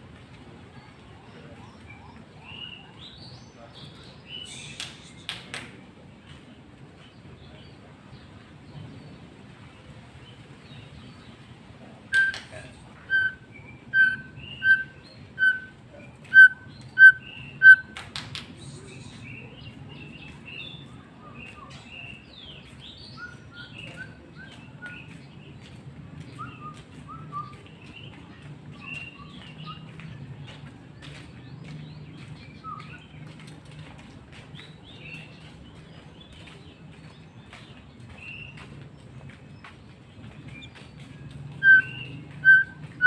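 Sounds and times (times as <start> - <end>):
bird singing whistled notes: 12.1 - 18.0, 20.1 - 25.2, 26.3 - 28.2, 41.4 - 43.0.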